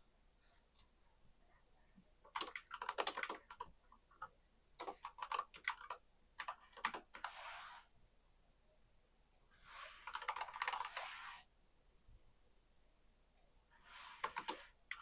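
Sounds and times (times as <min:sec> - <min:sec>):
keyboard typing: 0:02.2 - 0:07.4, 0:09.9 - 0:11.4, 0:14.0 - 0:15.0.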